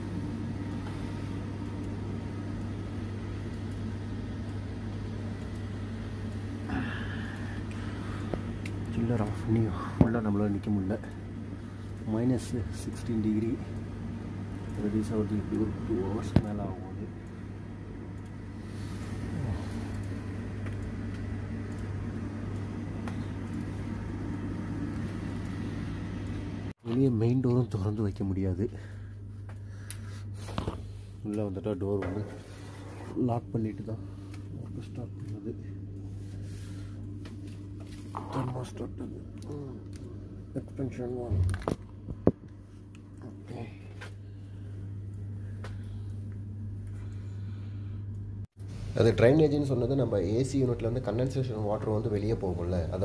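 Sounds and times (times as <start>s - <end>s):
refrigeration machinery hum: 0.0s - 53.0s.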